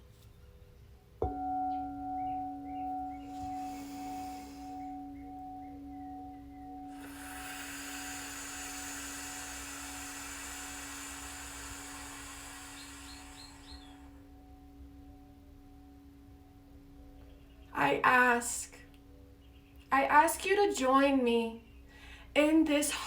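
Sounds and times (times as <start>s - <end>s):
singing bowl ringing: 1.2s - 19.9s
rushing hiss: 3.3s - 4.9s, 6.9s - 14.2s.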